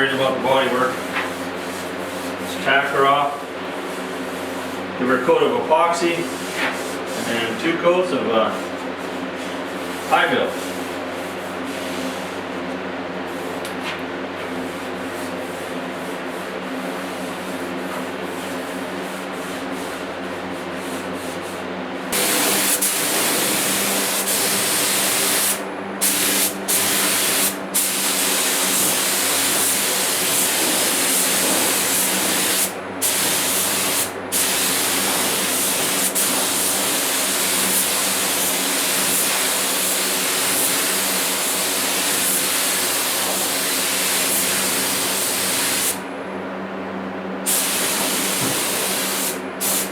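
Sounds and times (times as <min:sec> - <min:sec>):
paint spray gun hissing: 0:22.2 - 0:46.0, 0:47.5 - 0:49.9.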